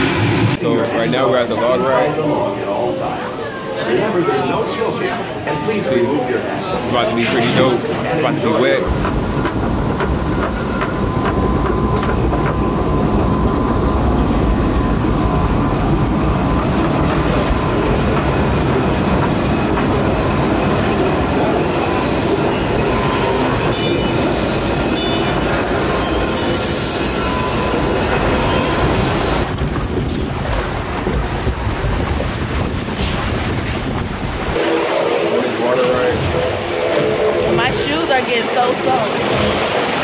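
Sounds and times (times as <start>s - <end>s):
rushing water noise: 8.9s - 40.0s.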